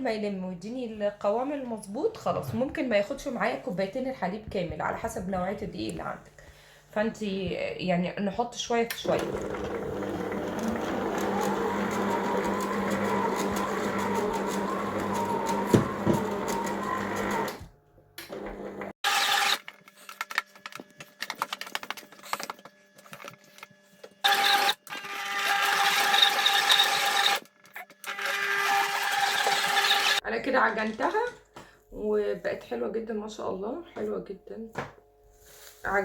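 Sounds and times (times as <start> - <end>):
dough kneader motor humming: 8.9 - 19.0.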